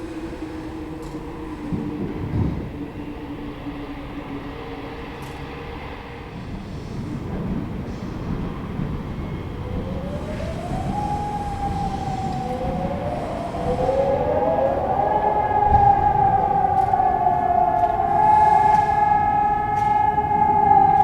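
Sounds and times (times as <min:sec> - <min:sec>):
civil defence sirens winding up: 0:00.0 - 0:06.6, 0:08.2 - 0:21.0.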